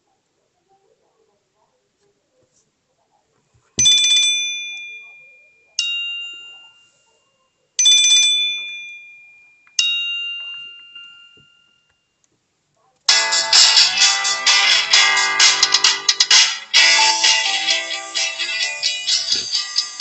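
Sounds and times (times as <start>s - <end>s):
guitar-like ringtone: 3.8s - 7.2s, 13.1s - 20.0s
two-note electronic ringtone chime: 16.8s - 18.7s.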